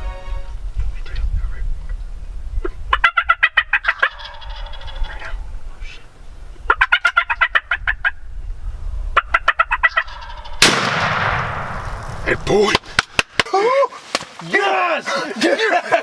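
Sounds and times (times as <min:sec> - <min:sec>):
turkey gobbling: 0:02.9 - 0:06.0, 0:06.6 - 0:08.2, 0:09.2 - 0:10.6.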